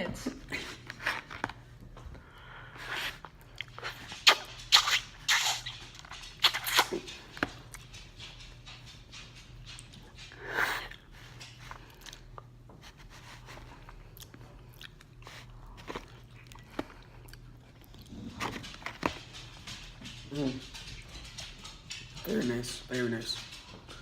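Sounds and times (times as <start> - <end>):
crunching and chewing fried chicken: 2.8 - 8.7, 9.7 - 12.7, 13.4 - 22.4.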